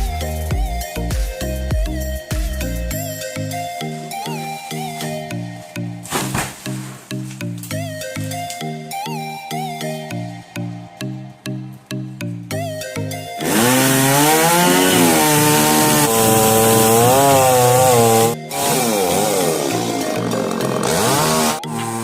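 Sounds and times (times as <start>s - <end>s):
background music: 0.0s - 22.0s
chainsaw cutting at high revs: 13.4s - 22.0s.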